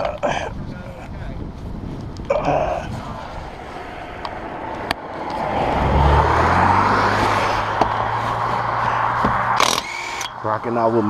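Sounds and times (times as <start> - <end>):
vehicle engine running: 3.0 - 11.0.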